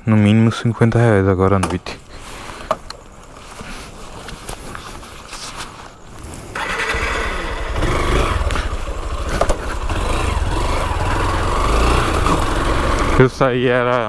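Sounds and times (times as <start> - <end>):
motorcycle engine starting and running: 6.1 - 14.0.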